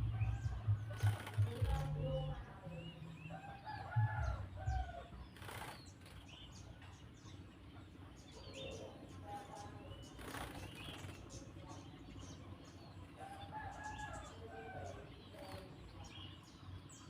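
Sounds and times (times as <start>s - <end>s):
bird wings fluttering: 0.9s - 1.9s, 5.3s - 6.4s, 10.1s - 11.4s.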